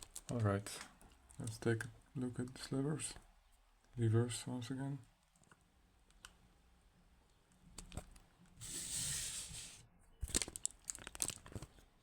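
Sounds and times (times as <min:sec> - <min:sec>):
rustling scrape: 0:08.6 - 0:09.9.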